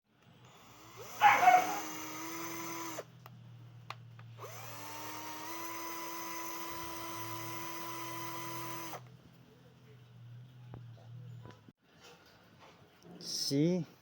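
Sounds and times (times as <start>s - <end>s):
cordless drill whining: 0.4s - 3.1s, 4.4s - 9.1s.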